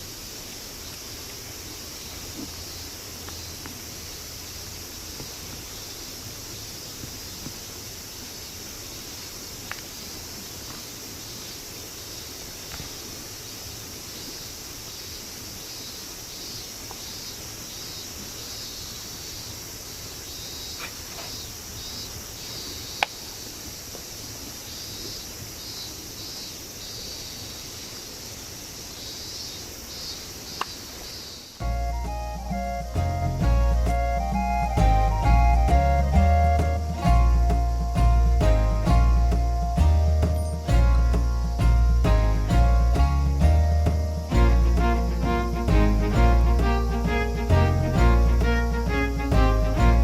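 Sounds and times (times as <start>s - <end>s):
insects chirping: 0.0s - 50.0s
stream rushing: 31.6s - 50.0s.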